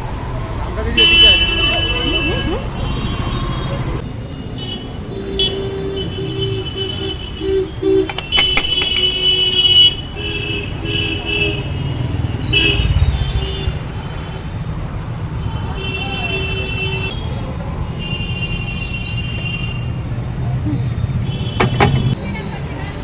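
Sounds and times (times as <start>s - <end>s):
traffic rumble: 0.0s - 23.0s
car horn toots: 4.6s - 11.8s, 21.3s - 22.2s
sharp clicks: 8.1s - 9.3s.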